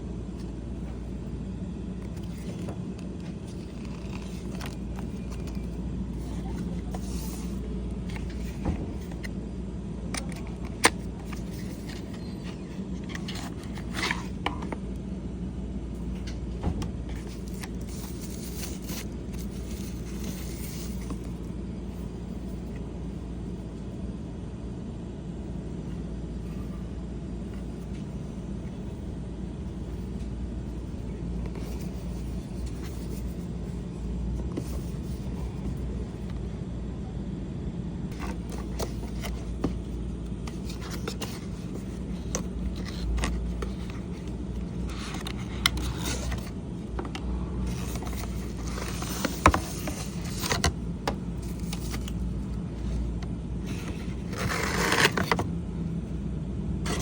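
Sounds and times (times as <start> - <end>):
steady low rumble: 0.0 - 54.4
packaging rustling: 2.0 - 9.3, 17.1 - 21.6, 38.1 - 47.1, 47.7 - 53.1.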